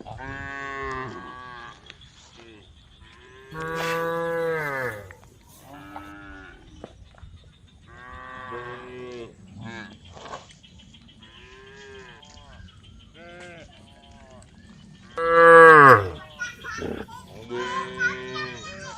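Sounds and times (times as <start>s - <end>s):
cows mooing: 3.6s - 5.2s, 15.2s - 17.1s.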